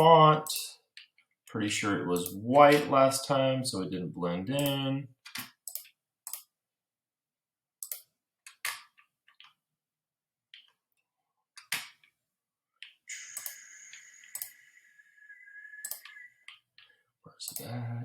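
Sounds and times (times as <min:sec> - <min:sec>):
computer mouse clicking: 0:04.6 - 0:06.5, 0:07.8 - 0:09.6, 0:12.8 - 0:16.9, 0:17.5 - 0:17.8
steady high whine: 0:13.1 - 0:16.4.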